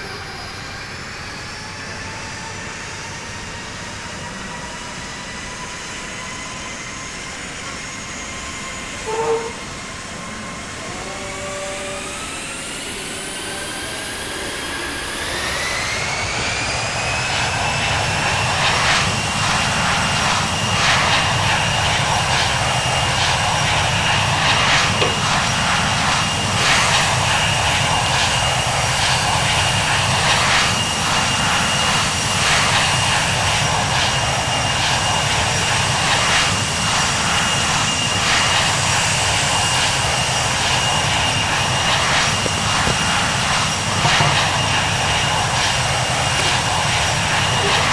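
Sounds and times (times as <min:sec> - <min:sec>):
airplane engine whine: 0:00.0 - 0:47.9.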